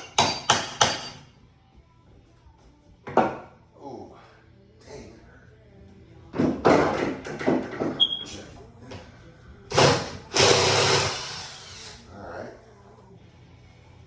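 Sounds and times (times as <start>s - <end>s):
power drill driving screws: 9.7s - 12.0s.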